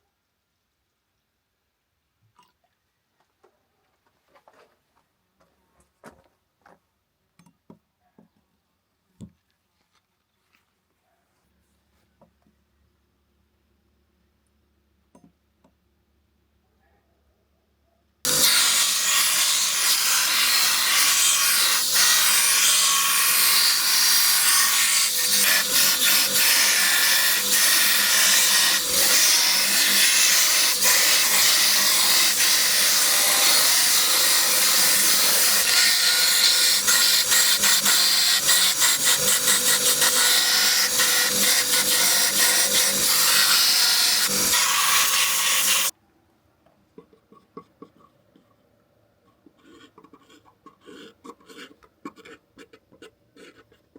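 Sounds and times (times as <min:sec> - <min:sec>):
knife blade grinding rasp: 0:18.3 - 0:45.9.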